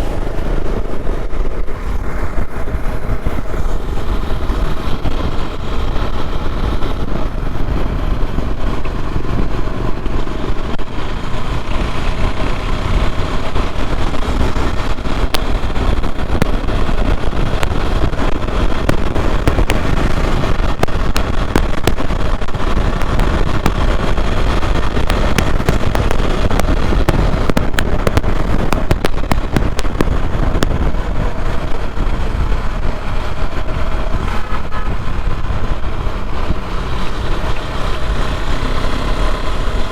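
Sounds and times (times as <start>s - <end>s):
motorcycle engine running: 0.0s - 39.9s
road and wind noise: 0.0s - 39.9s
short sharp crackles: 8.5s - 38.0s.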